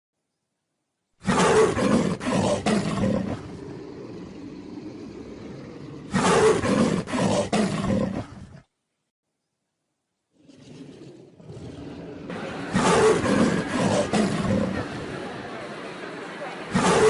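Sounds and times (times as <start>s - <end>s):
dinosaur roar: 1.2s - 8.7s, 10.3s - 15.6s, 16.6s - 17.0s.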